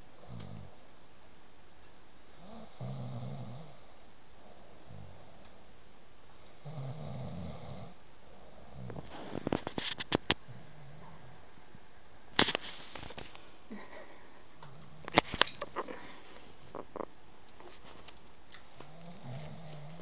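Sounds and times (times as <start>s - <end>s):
soft breathing: 8.3s - 9.8s, 12.6s - 16.8s.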